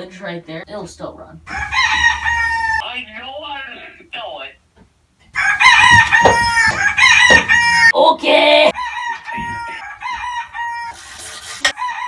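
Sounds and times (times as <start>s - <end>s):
rooster crowing: 1.5s - 2.8s, 5.4s - 7.9s, 8.7s - 12.0s.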